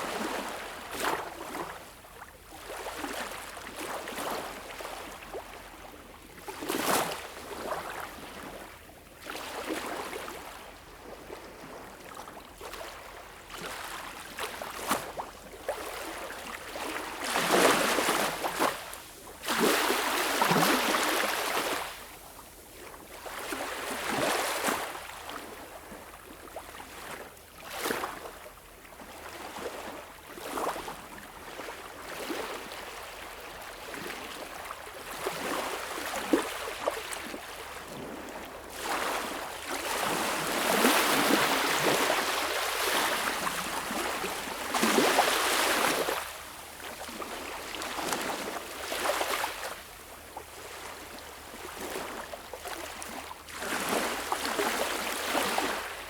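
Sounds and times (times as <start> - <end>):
small waves lapping on shore: 0.0 - 56.0.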